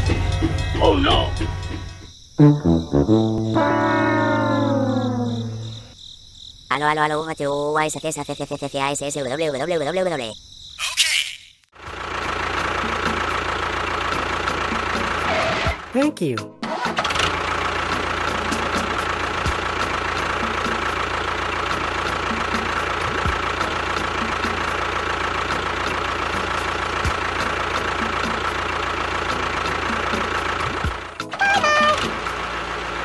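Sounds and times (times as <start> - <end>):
small tractor motor whining: 16.6 - 33.0.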